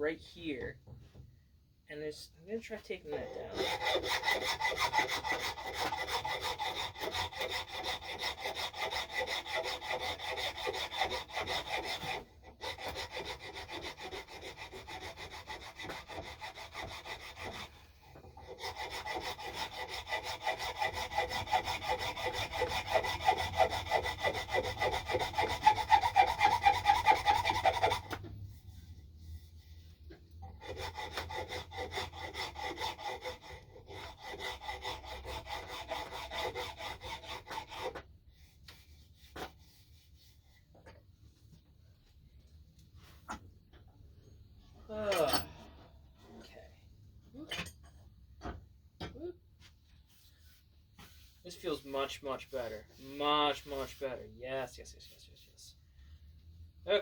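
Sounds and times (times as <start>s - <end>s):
file scraping on wood: 3.1s - 42.2s, 49.6s - 55.4s.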